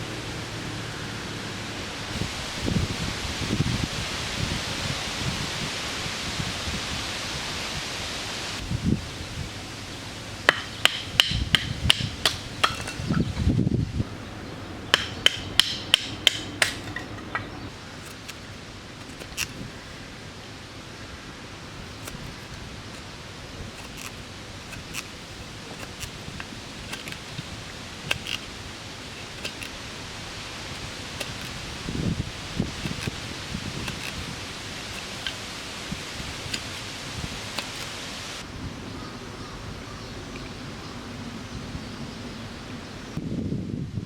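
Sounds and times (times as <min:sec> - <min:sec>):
hammer striking metal tent peg: 0:10.5 - 0:13.3, 0:14.9 - 0:18.4.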